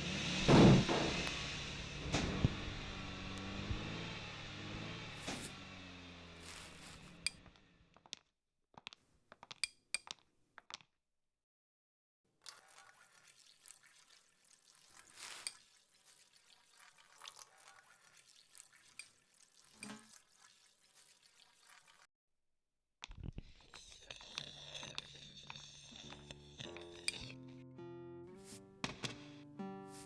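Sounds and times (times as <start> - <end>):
music with held low notes: 0.0 - 7.1, 26.6 - 30.0
water dripping and trickling: 12.4 - 22.1.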